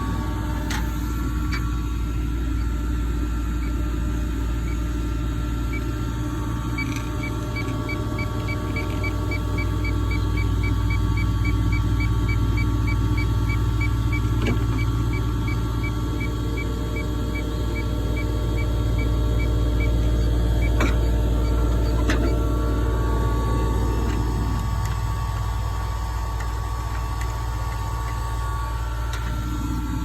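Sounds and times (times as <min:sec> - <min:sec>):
air conditioner humming: 0:00.0 - 0:30.0
rapid electronic beeping: 0:04.6 - 0:28.4.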